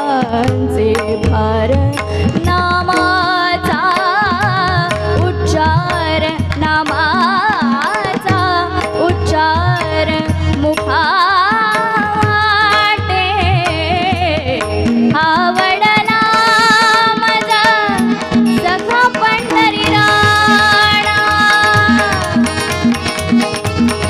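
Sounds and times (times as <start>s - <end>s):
woman singing ornamented melody: 0.0s - 22.8s
held accompaniment tones: 17.4s - 24.0s.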